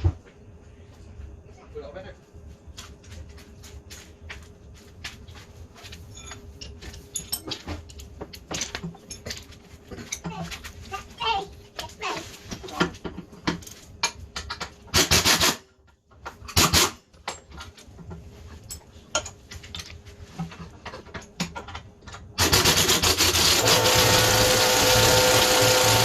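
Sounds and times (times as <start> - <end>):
motor-driven whirring: 23.2 - 26.0.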